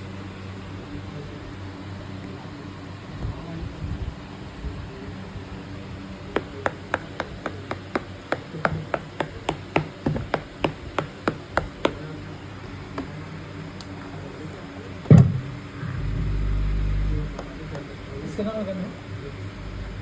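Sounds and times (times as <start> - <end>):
percussion pad taps: 6.4 - 12.1
loud thump: 15.1 - 17.9.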